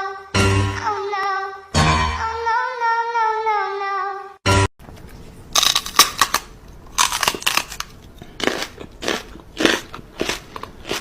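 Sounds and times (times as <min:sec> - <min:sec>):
irregular crunching: 0:05.0 - 0:11.0.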